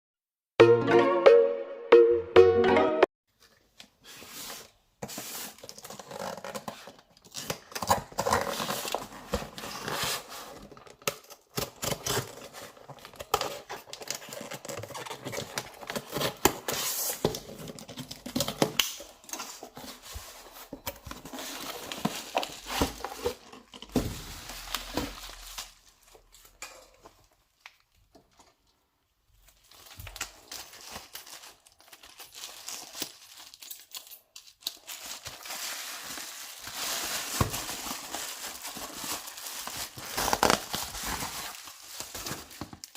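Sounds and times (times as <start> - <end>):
packaging crinkling and tearing: 5.1 - 28.6, 29.4 - 42.9.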